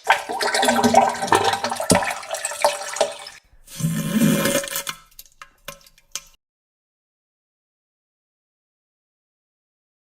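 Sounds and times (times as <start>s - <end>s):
wet splashing toilet sound: 0.0s - 6.4s.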